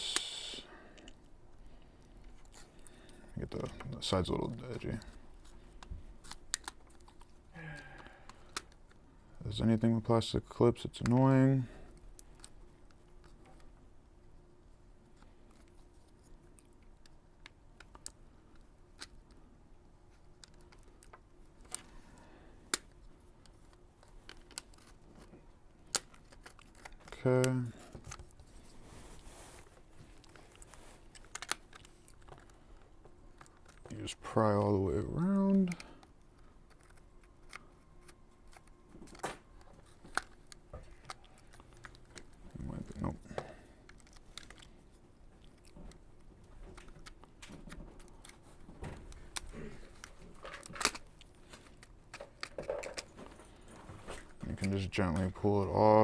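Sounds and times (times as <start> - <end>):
plastic clips snapping loose: 31.1 - 32.5, 49.3 - 53.1.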